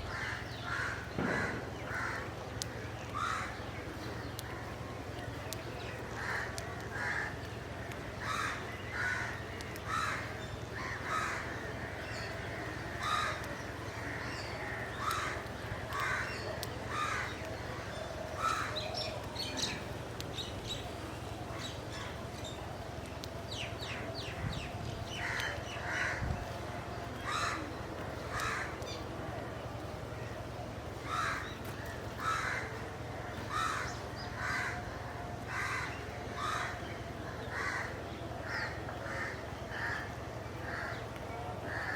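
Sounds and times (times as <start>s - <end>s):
crows cawing: 0.1s - 2.4s, 3.0s - 3.7s, 6.1s - 19.8s, 25.1s - 26.3s, 27.2s - 29.0s, 31.0s - 41.0s, 41.7s - 41.9s.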